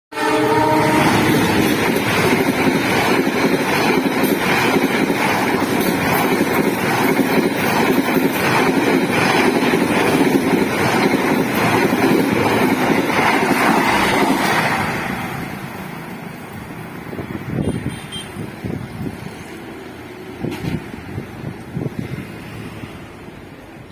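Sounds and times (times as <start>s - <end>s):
train passing: 0.1s - 23.9s
wheels clacking: 1.3s - 14.7s.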